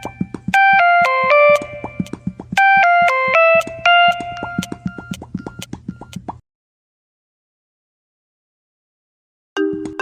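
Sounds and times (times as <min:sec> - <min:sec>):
ringtone melody: 0:00.0 - 0:06.1, 0:09.6 - 0:10.0
drum beat: 0:00.0 - 0:06.4.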